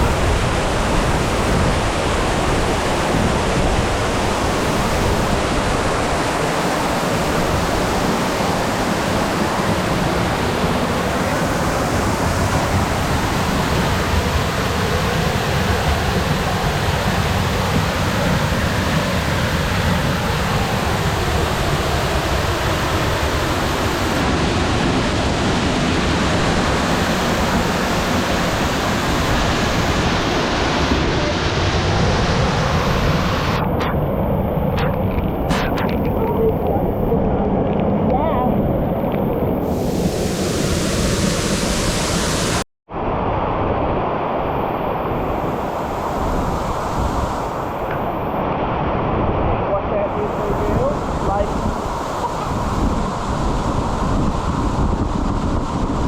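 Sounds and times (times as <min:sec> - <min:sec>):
waterfall rushing: 0:39.2 - 0:42.6, 0:50.0 - 0:54.5.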